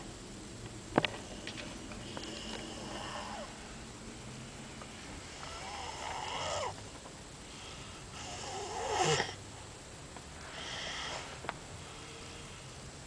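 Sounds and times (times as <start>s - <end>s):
man snoring: 2.1s - 3.5s, 5.3s - 6.8s, 8.1s - 9.4s.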